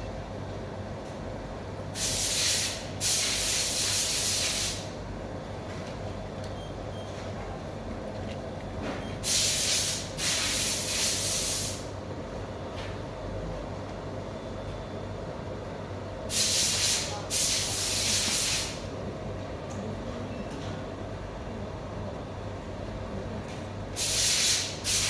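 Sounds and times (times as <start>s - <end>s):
spray can hissing: 24.0s - 25.0s.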